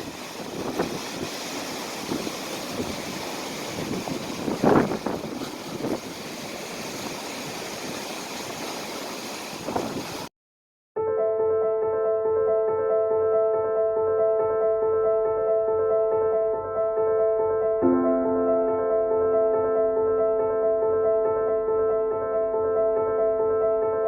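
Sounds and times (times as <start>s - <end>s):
wind buffeting microphone: 0.0s - 7.8s, 9.5s - 10.3s
piano music: 11.0s - 24.0s.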